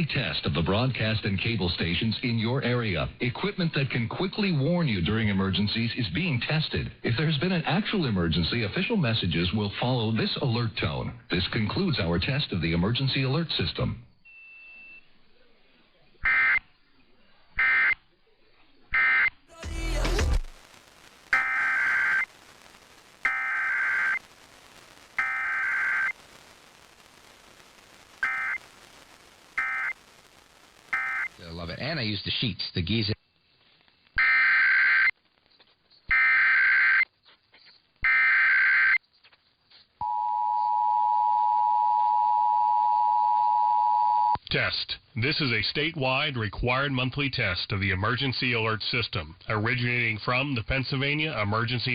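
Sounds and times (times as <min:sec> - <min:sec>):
loud noisy sound: 0:19.5 - 0:31.5
digital data tone bursts: 0:21.3 - 0:22.3, 0:23.2 - 0:24.2, 0:25.2 - 0:26.2, 0:28.2 - 0:28.7, 0:29.5 - 0:30.0, 0:30.8 - 0:31.8.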